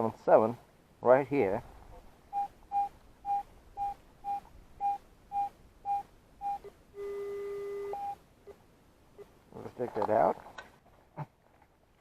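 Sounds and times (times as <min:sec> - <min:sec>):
metal detector beeps: 0:02.3 - 0:08.2
metal detector steady tone: 0:02.3 - 0:08.2.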